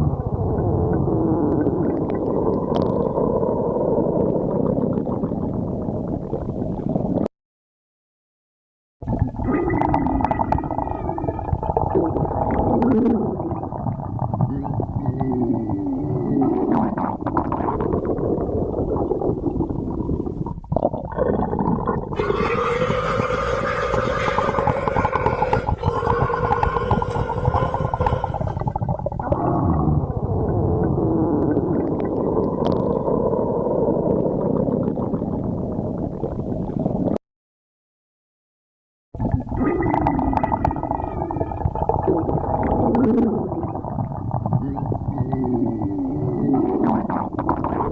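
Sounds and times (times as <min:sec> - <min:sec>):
stomach growling: 0:00.0 - 0:07.3, 0:09.0 - 0:37.2, 0:39.2 - 0:47.9.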